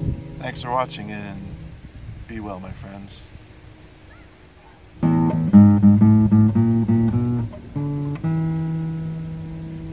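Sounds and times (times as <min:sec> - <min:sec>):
acoustic guitar strumming: 0:00.0 - 0:01.8, 0:05.0 - 0:09.9.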